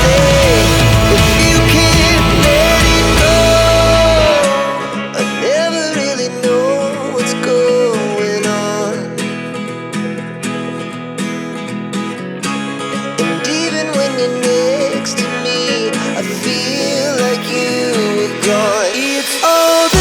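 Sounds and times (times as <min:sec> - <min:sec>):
steady beat: 0:00.0 - 0:04.9, 0:18.9 - 0:20.0
plucked acoustic guitar music: 0:00.0 - 0:20.0.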